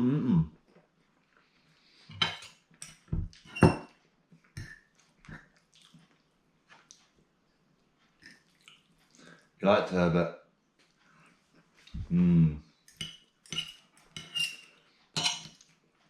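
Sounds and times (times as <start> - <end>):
cutlery and crockery clinking: 2.1 - 4.0, 12.9 - 15.7.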